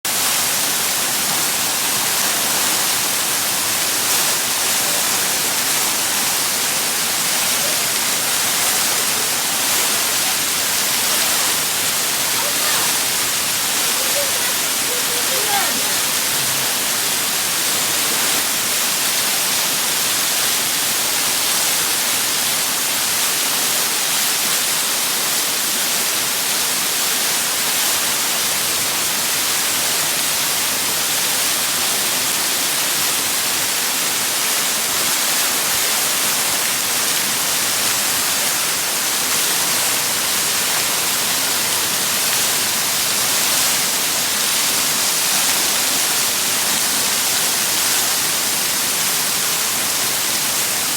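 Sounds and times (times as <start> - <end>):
waterfall roaring: 0.0 - 50.9.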